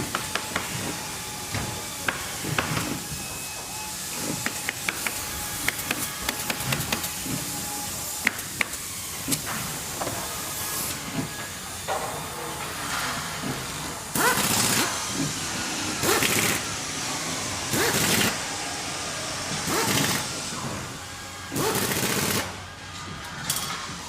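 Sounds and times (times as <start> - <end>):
factory machinery running: 0.0 - 24.0
machine hissing bursts: 12.8 - 22.6.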